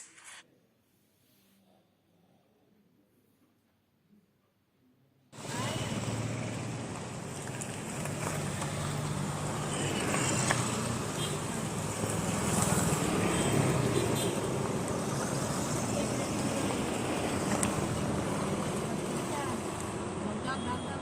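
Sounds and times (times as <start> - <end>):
road traffic rumble: 5.4 - 21.0.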